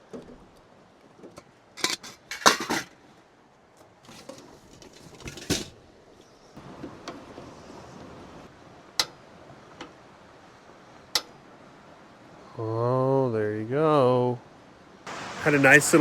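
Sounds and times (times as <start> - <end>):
objects clattering: 1.8 - 3.0, 4.0 - 5.8.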